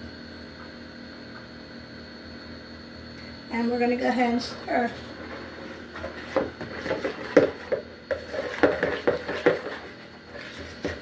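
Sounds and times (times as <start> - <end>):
spoon knocking and scraping bowl: 5.9 - 11.0.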